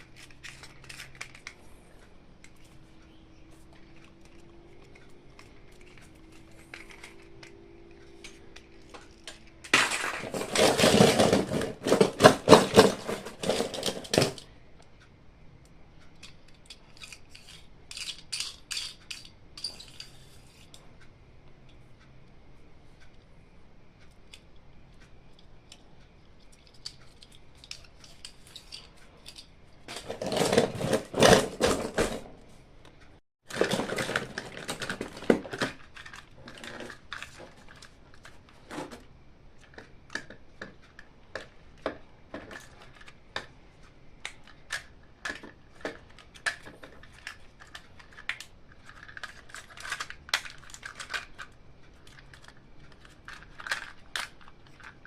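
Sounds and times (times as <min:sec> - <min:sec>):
packaging rustling and crackling: 0:00.0 - 0:02.8, 0:33.5 - 0:39.0
hard toy pieces clicking: 0:03.9 - 0:14.5, 0:16.2 - 0:20.3, 0:44.3 - 0:55.0.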